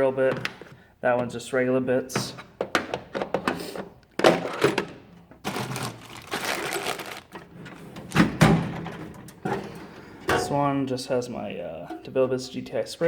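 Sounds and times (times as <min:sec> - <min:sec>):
metal tool box drawers: 0:02.2 - 0:10.6.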